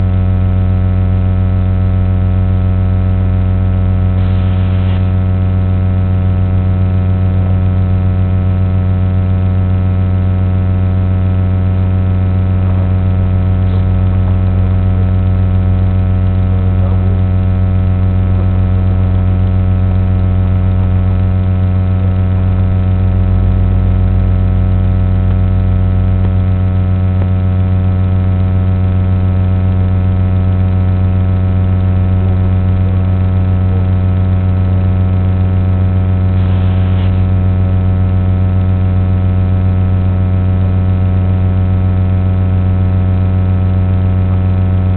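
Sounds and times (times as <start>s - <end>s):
electric motor and propeller drone: 4.2s - 5.1s, 36.4s - 37.2s.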